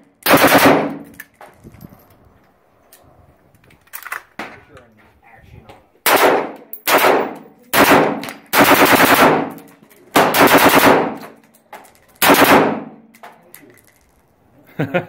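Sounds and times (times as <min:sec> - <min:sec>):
gunshots with ringing tail: 0:00.2 - 0:01.0, 0:06.1 - 0:09.6, 0:10.2 - 0:11.2, 0:12.2 - 0:13.0.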